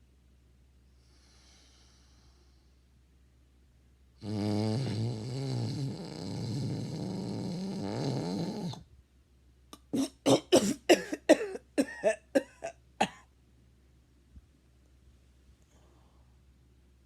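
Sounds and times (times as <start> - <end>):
person snoring: 4.2 - 8.8
short coughs: 9.8 - 13.3.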